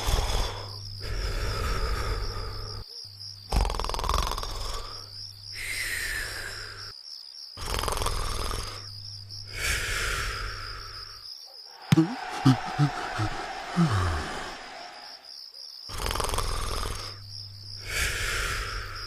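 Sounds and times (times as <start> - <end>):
cartoon snoring with whistle: 3.5 - 6.8, 7.6 - 8.9, 11.9 - 15.0, 15.9 - 17.2.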